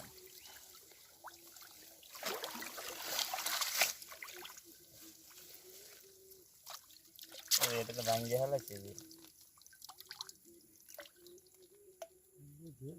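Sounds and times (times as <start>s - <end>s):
water splashing and trickling: 0.0s - 12.1s.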